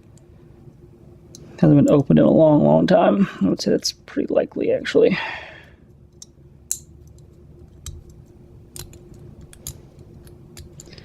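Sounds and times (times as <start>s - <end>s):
faint steady hum: 0.0s - 11.0s
lock pick clicking in padlock: 6.2s - 11.0s.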